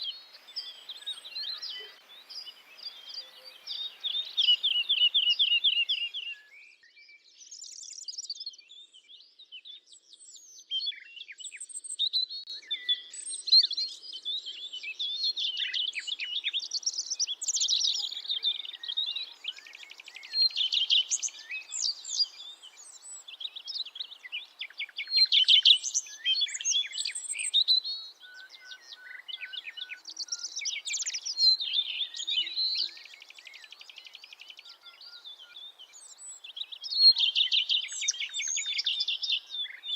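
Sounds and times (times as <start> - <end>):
songbirds singing and calling: 0.0 - 39.9.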